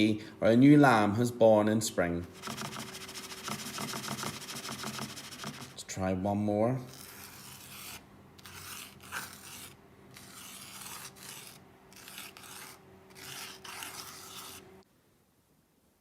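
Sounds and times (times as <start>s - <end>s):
marker writing on whiteboard: 2.4s - 5.8s.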